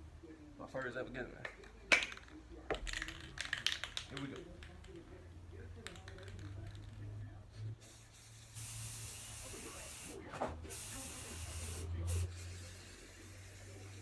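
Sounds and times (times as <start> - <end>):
spray paint can spraying: 7.8 - 14.0.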